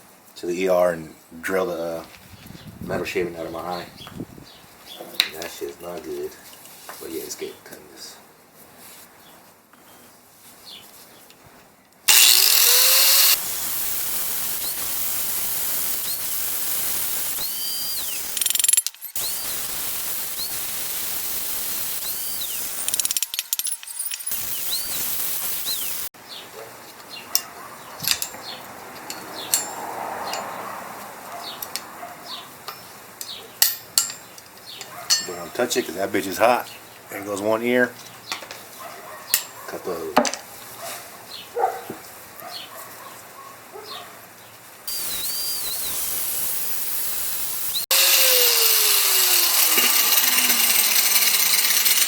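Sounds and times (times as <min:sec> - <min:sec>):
angle grinder cutting steel: 0:12.1 - 0:26.1, 0:44.9 - 0:52.0.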